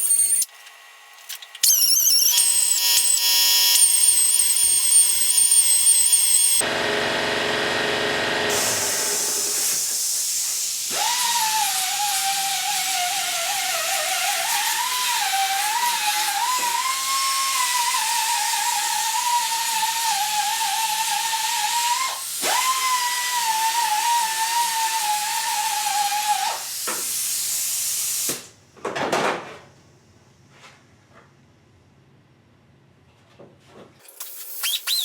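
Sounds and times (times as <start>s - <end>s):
power grinder on sheet metal: 1.8s - 10.1s, 10.9s - 26.6s.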